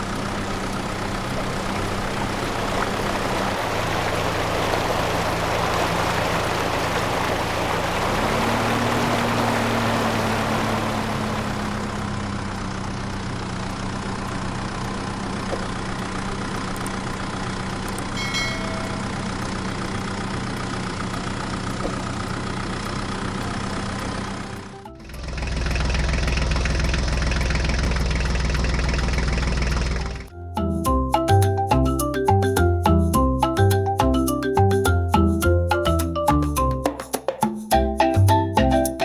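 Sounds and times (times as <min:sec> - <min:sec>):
small engine running: 0:00.0 - 0:30.3.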